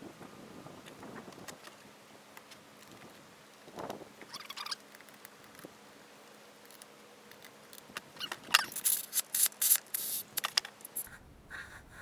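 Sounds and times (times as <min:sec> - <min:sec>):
air chuck clicks: 0:07.4 - 0:11.1
air hissing from air chuck: 0:08.6 - 0:11.1.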